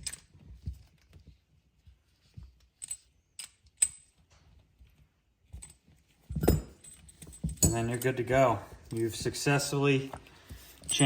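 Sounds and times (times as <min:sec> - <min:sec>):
wrench clinking on metal fittings: 0:02.7 - 0:04.2, 0:05.6 - 0:09.8, 0:10.5 - 0:11.0.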